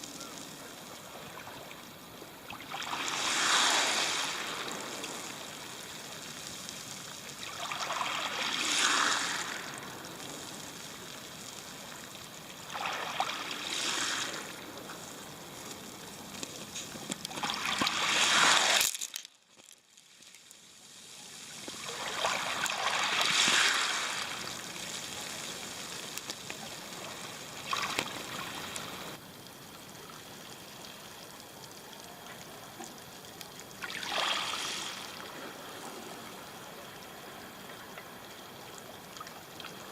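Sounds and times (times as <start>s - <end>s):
waves breaking on pebble beach: 2.6s - 19.8s, 21.5s - 29.2s, 33.8s - 35.8s.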